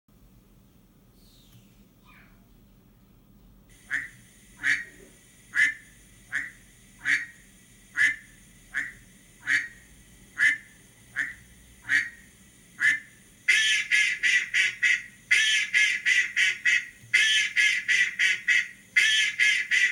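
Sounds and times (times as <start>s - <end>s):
duck quacks: 3.9s - 7.4s, 8.0s - 9.8s, 10.4s - 12.2s, 12.8s - 19.9s.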